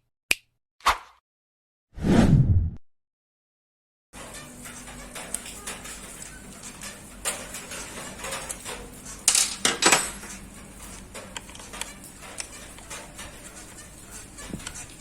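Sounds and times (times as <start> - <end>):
metal tools clinking and scraping: 4.2 - 15.0.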